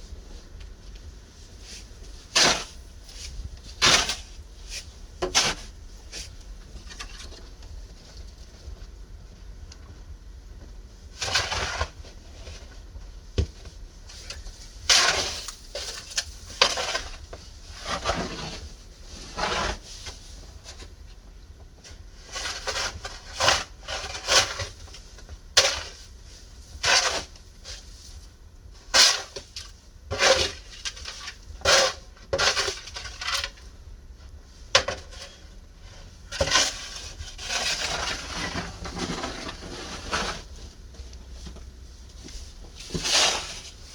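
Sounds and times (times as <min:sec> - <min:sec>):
snow shovel scraping through snow: 0:01.8 - 0:05.7, 0:14.9 - 0:20.0, 0:36.4 - 0:40.6, 0:42.8 - 0:43.9.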